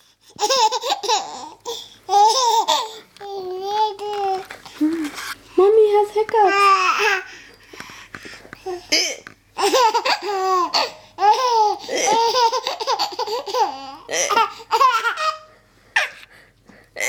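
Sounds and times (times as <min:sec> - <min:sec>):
baby laughing: 0:00.3 - 0:04.4, 0:08.7 - 0:16.2.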